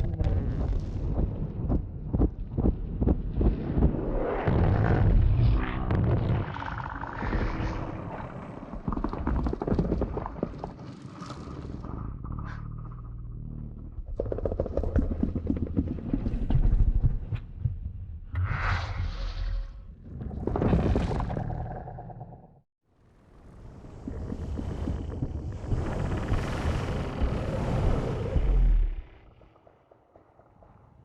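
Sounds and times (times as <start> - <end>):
low creature rumble: 0.0 - 2.0, 20.0 - 22.6, 23.8 - 29.7.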